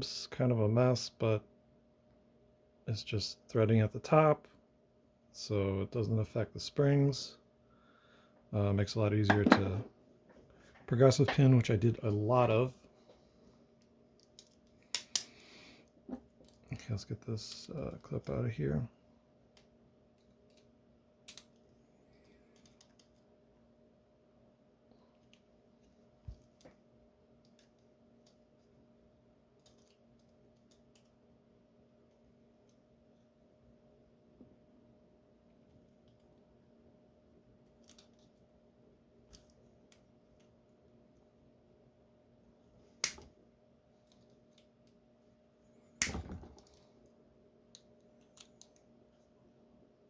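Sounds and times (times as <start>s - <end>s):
loud metallic snap: 46.0s - 46.4s.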